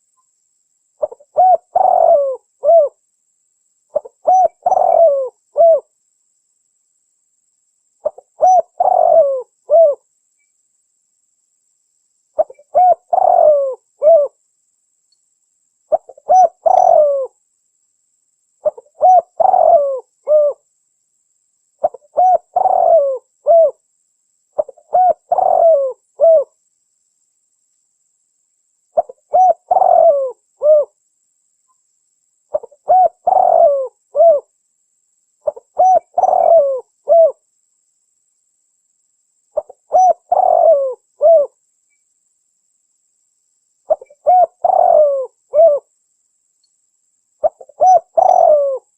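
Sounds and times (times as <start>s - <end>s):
dove cooing: 1.0s - 3.0s, 3.9s - 5.9s, 8.0s - 10.0s, 12.4s - 14.4s, 15.9s - 17.4s, 18.6s - 20.6s, 21.8s - 23.8s, 24.6s - 26.5s, 29.0s - 31.0s, 32.5s - 34.5s, 35.4s - 37.4s, 39.6s - 41.6s, 43.9s - 45.9s, 47.4s - 48.9s.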